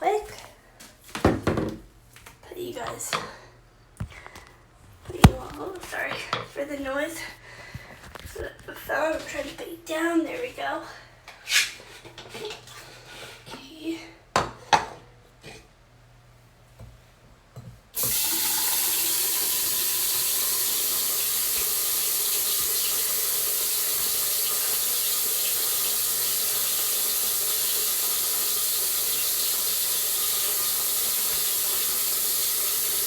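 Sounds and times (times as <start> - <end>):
tap water running into bottle: 18.0 - 33.0.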